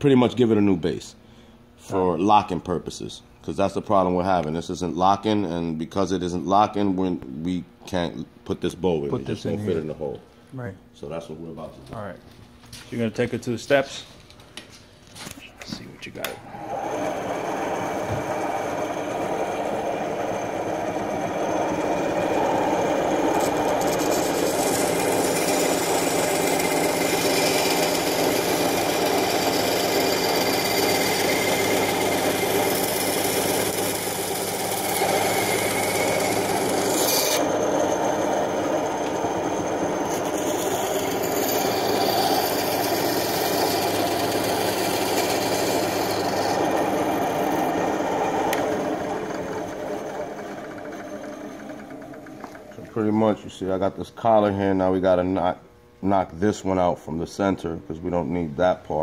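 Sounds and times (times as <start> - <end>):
power tool grinding plastic: 16.5 - 53.0.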